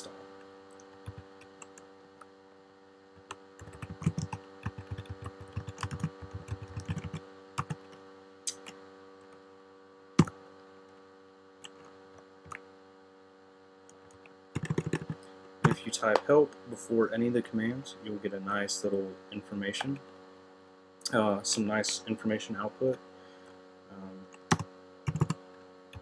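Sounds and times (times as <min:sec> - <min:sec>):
steady electrical hum: 0:00.0 - 0:26.0
typing on computer keyboard: 0:03.6 - 0:07.9, 0:14.6 - 0:15.2, 0:24.5 - 0:25.4.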